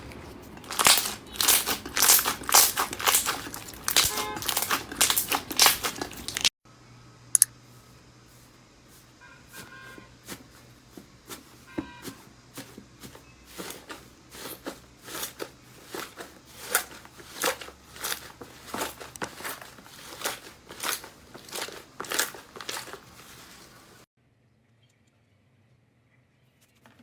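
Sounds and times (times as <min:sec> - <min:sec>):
crunchy slime crackling: 0:00.0 - 0:06.5, 0:13.5 - 0:24.1.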